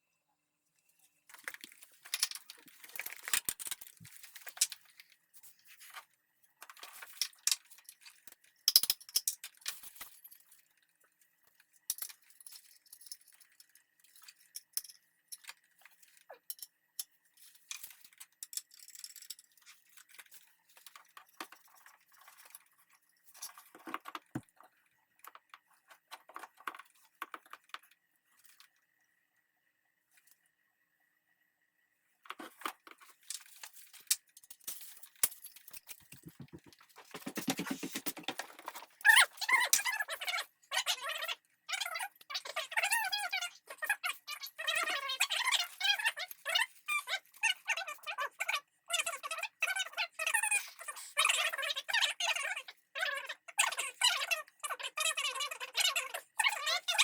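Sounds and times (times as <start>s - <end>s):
small metal parts clinking: 6.6s - 10.6s, 11.9s - 23.9s.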